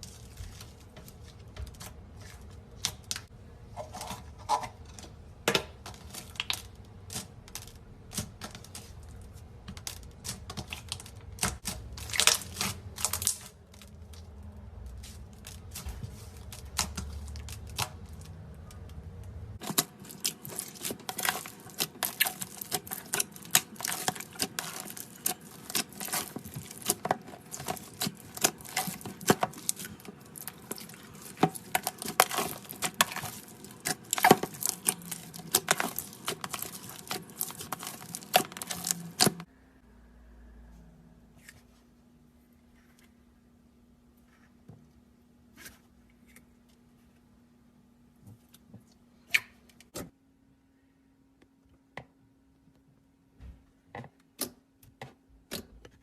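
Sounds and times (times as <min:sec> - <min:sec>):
slime squished by hand: 0:09.8 - 0:14.3.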